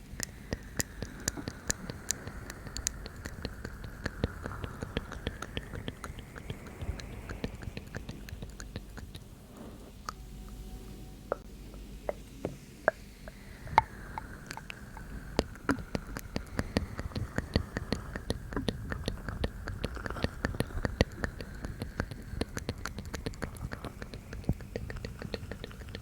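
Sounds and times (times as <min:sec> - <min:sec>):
wet mouth clicks and smacks: 0:00.0 - 0:09.3, 0:12.1 - 0:26.0
faint breathy hiss: 0:00.0 - 0:26.0.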